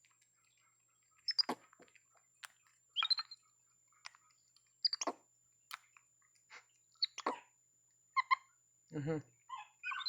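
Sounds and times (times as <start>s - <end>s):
monkey high squeaks: 1.3s - 1.6s, 3.0s - 3.4s, 4.8s - 5.2s, 7.0s - 7.5s, 9.5s - 10.0s.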